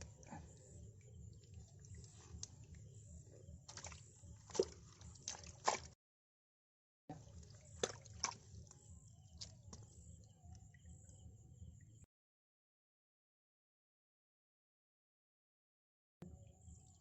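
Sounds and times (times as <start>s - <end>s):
water splashing and dripping: 3.7s - 6.0s, 7.1s - 8.8s.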